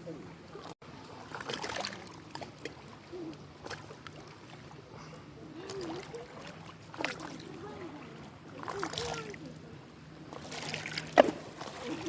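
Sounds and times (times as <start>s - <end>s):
small waves lapping on shore: 0.0s - 12.0s.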